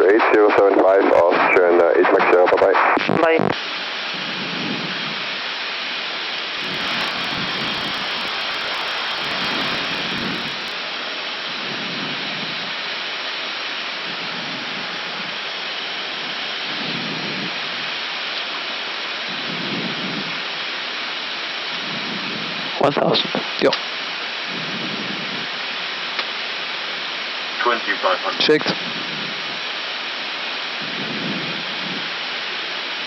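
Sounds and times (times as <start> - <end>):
rushing hiss of airflow: 6.6 - 10.8.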